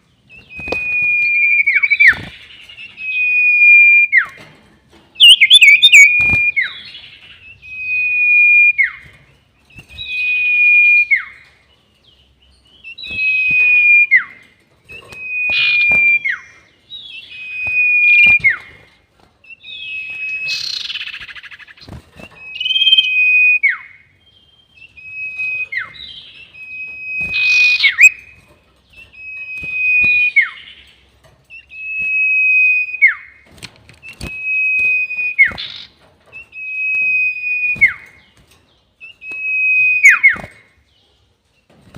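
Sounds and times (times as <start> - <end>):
bird whistling call: 5.2 - 9.0, 12.8 - 14.4, 15.0 - 18.7, 19.6 - 21.6, 22.2 - 24.0, 24.8 - 28.3, 29.1 - 30.8, 39.0 - 40.5.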